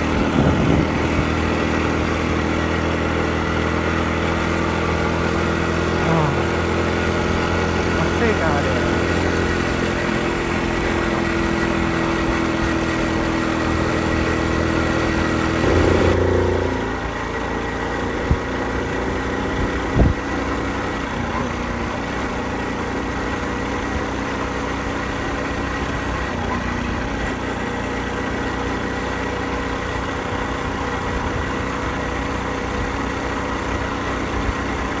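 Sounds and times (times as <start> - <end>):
small motorcycle engine running: 0.0 - 35.0.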